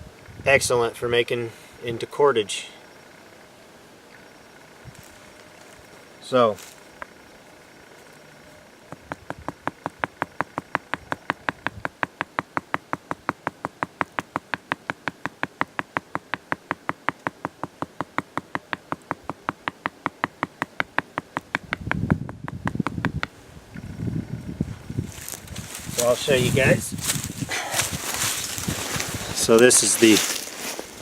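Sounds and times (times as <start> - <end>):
stone knocking on stone: 8.9 - 23.3
low rustling: 23.3 - 31.0.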